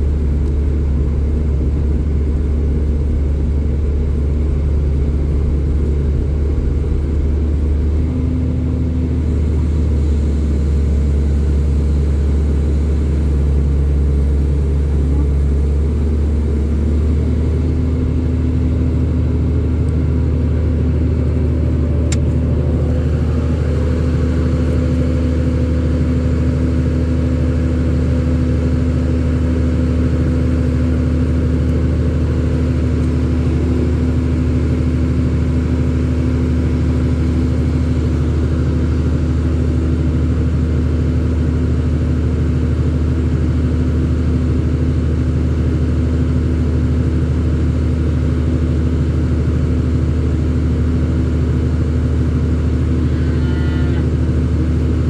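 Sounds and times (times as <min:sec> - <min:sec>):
engine running steadily: 0:00.0 - 0:55.0.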